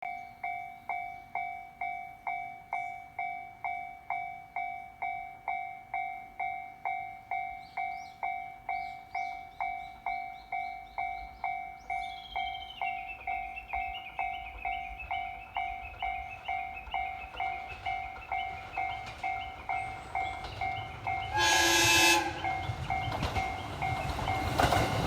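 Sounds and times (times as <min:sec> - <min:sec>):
level-crossing bell ringing: 0:00.1 - 0:25.0
train rumble: 0:08.7 - 0:25.0.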